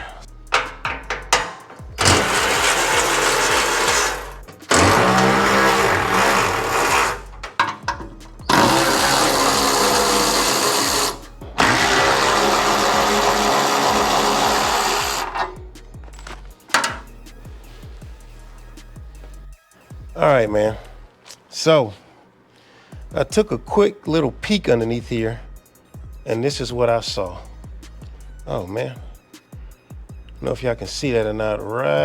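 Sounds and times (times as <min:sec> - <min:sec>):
power tool running: 0:00.6 - 0:15.7.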